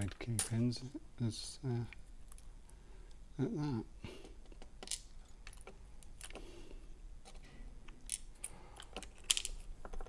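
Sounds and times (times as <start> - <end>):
small lock parts clicking: 7.2 - 10.0.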